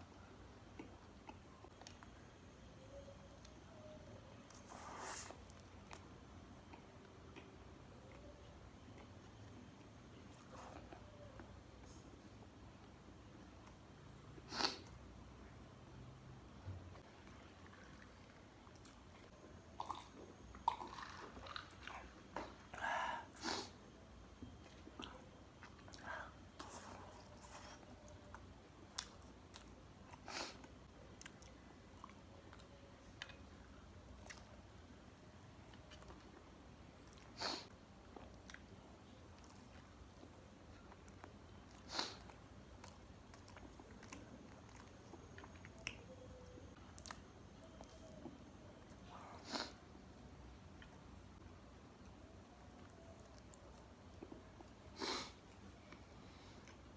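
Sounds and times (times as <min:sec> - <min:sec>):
chewing crispy fried food: 0:17.0 - 0:22.6, 0:24.4 - 0:34.7, 0:35.5 - 0:49.0.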